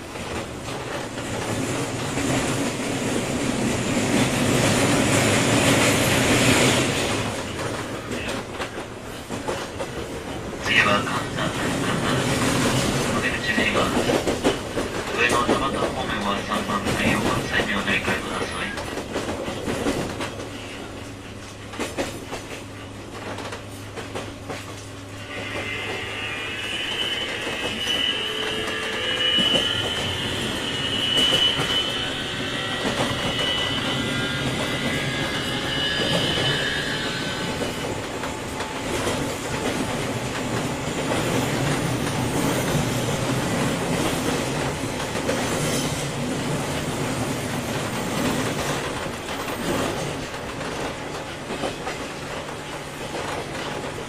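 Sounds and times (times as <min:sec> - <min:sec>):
rail-joint clickety-clack: 0:00.0 - 0:54.0
train rumble: 0:00.0 - 0:54.0
high wavering wheel squeal: 0:25.2 - 0:37.8.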